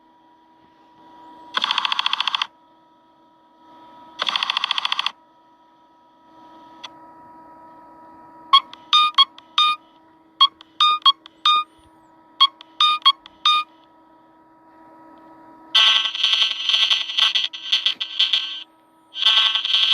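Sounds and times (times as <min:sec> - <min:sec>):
rapid buzzing tone: 0:01.5 - 0:02.5, 0:04.2 - 0:05.2, 0:15.7 - 0:19.9
glitchy synth beeps: 0:12.4 - 0:13.7.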